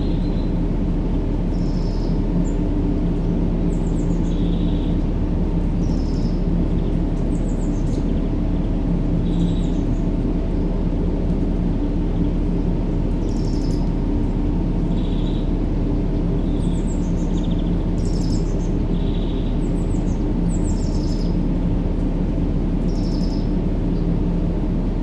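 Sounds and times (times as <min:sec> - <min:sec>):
low rumbling white noise: 0:00.0 - 0:25.0
small birds chirping: 0:05.8 - 0:10.1, 0:13.2 - 0:14.0, 0:14.8 - 0:15.6, 0:16.4 - 0:21.4, 0:22.9 - 0:24.1.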